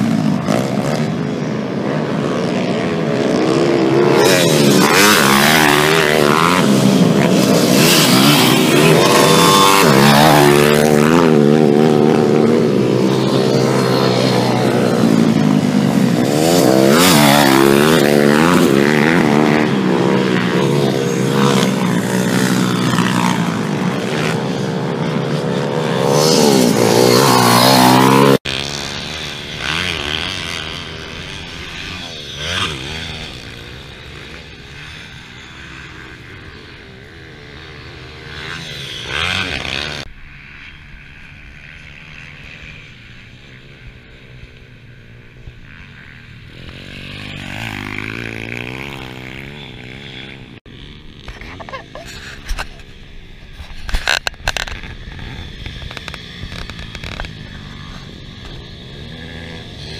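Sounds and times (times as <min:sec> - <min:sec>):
motocross bike engines revving: 0:00.0 - 0:59.9.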